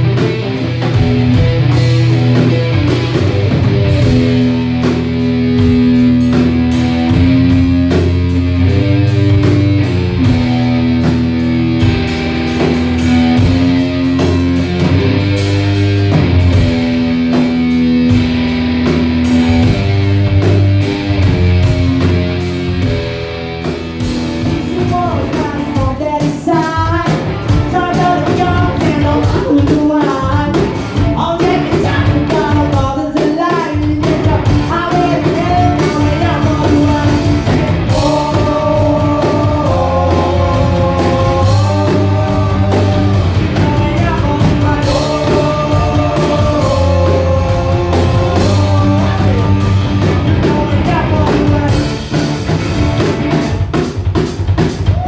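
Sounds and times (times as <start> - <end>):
live rock band playing: 0.0 - 55.0
person singing: 24.5 - 52.2.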